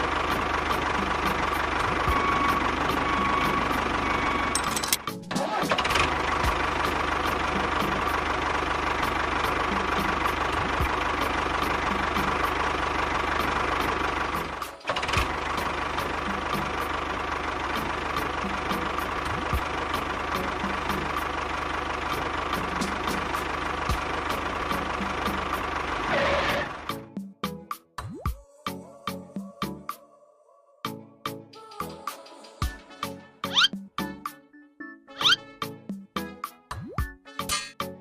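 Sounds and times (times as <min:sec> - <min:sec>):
engine running steadily: 0:00.0 - 0:27.1.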